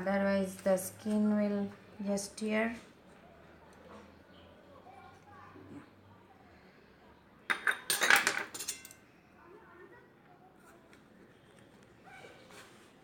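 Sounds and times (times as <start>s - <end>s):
metal spoon clinking on dish: 7.5s - 9.0s.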